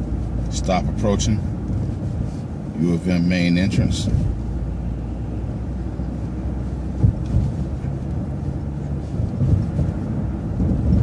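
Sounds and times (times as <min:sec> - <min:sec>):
bus engine rumble and road noise: 0:00.0 - 0:11.0.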